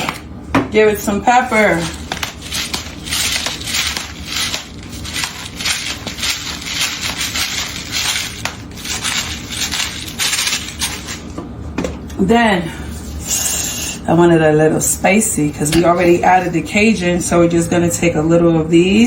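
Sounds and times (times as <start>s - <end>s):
pepper mill grinding: 1.3s - 11.3s.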